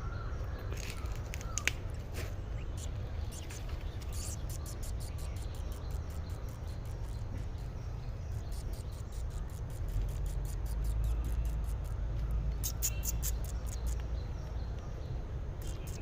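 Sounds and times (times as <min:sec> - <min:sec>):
insect chirping: 0:02.6 - 0:14.6, 0:15.6 - 0:16.0.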